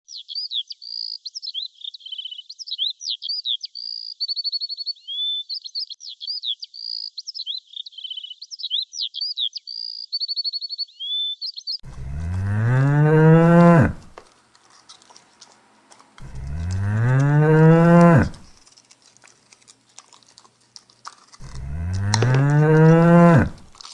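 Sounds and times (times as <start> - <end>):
bird song of chirps and trills: 0.0 - 14.0
cow mooing: 11.9 - 14.1, 16.2 - 18.5, 21.4 - 23.7.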